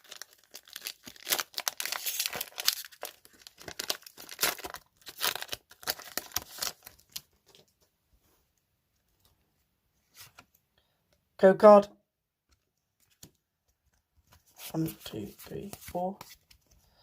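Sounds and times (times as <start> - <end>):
foil wrapper crinkling: 0.0 - 7.3.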